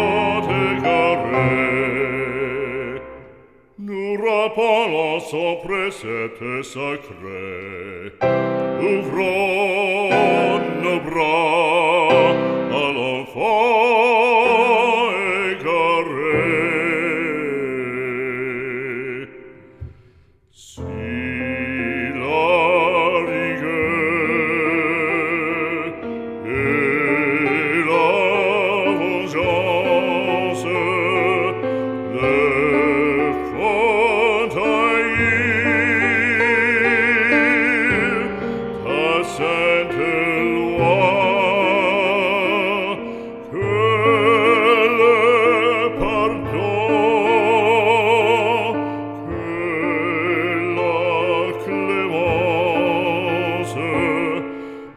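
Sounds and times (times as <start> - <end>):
operatic singing with vibrato: 0.0 - 54.9.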